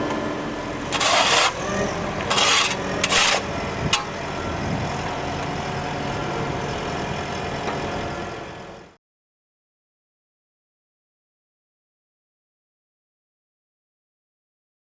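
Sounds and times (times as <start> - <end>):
diesel engine idling: 0.0 - 9.0.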